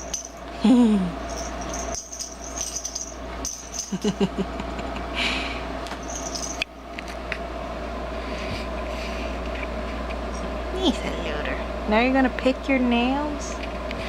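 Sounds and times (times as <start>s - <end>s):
jingle ball jingling: 0.0s - 0.5s, 1.2s - 4.4s, 6.0s - 6.6s.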